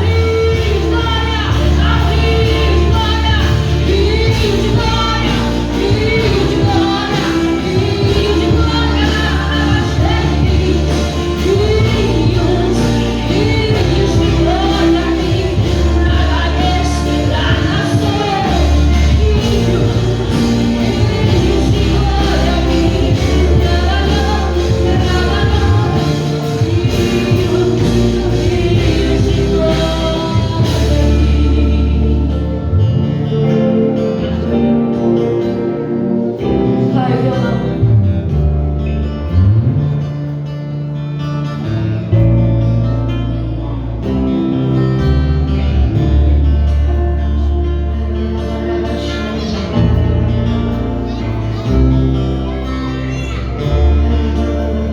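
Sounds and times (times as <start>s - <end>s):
band with sustained low notes: 0.0s - 54.9s
people singing worship music: 0.0s - 54.9s.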